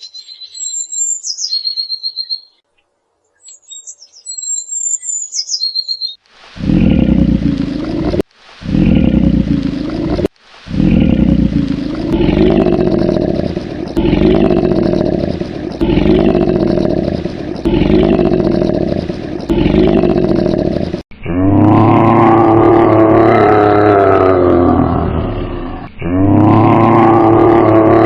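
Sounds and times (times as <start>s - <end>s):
large animal low rough calls: 6.6s - 28.0s.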